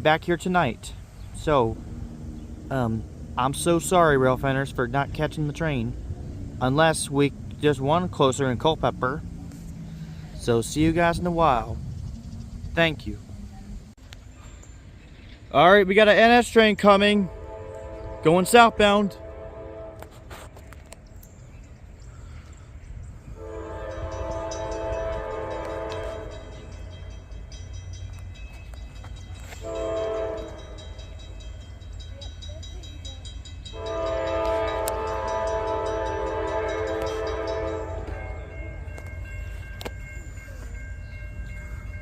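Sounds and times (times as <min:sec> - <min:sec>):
low rumble: 0:01.0 - 0:14.0
locomotive air horn blasts: 0:17.0 - 0:20.5, 0:23.3 - 0:26.8, 0:29.4 - 0:31.0, 0:33.7 - 0:39.1.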